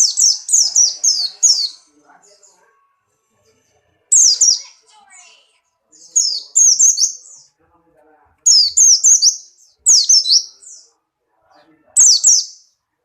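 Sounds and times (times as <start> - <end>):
bird singing high chirps: 0.0 - 2.7, 4.1 - 4.8, 5.9 - 7.5, 8.4 - 10.9, 12.0 - 12.8.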